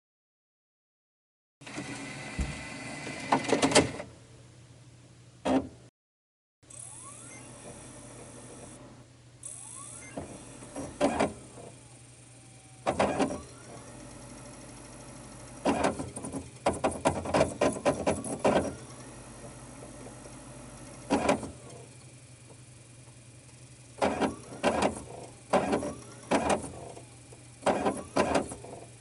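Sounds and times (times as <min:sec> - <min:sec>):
disc tray motor whirring: 0:06.7 - 0:29.0.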